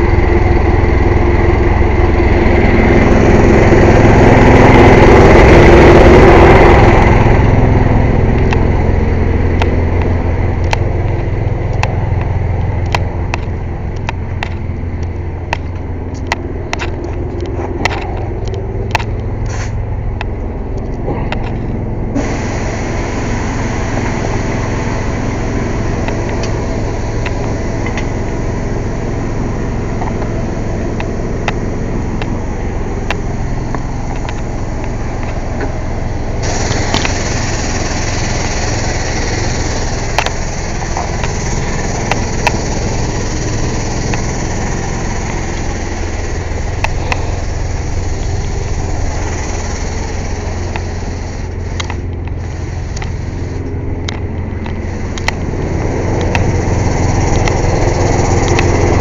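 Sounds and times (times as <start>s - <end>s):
air compressor droning: 0.0s - 59.0s
loud air hiss: 19.5s - 19.8s, 22.2s - 32.6s, 33.4s - 53.6s, 54.7s - 59.0s.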